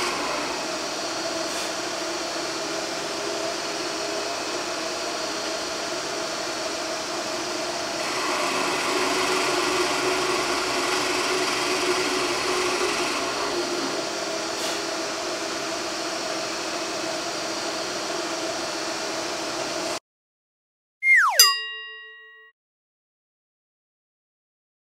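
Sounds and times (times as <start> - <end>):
power tool motor running: 0.0 - 6.2, 7.5 - 16.0.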